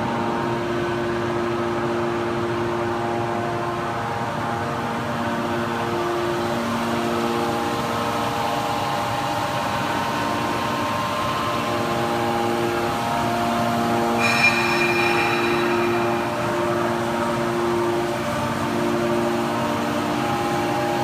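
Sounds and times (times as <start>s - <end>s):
high-pitched machine whine: 0.0s - 21.0s
baler machine hum: 11.5s - 18.6s.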